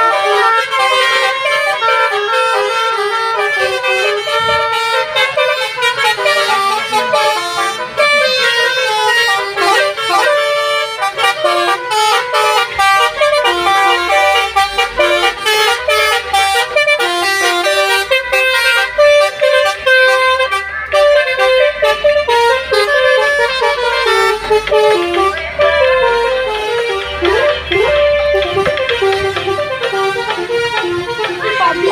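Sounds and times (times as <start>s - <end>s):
multi-tone horns playing melody: 0.0s - 31.9s
low bass line: 17.1s - 31.9s.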